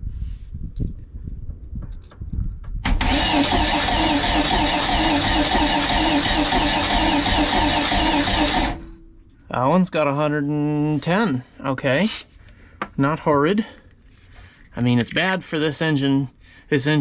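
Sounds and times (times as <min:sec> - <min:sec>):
starter cranking boat engine: 0:02.9 - 0:08.8.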